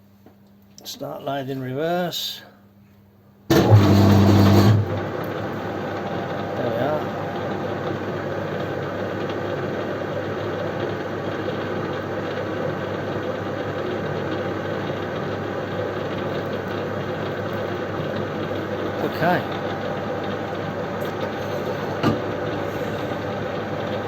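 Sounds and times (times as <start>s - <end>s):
metal lathe running: 3.5s - 24.0s.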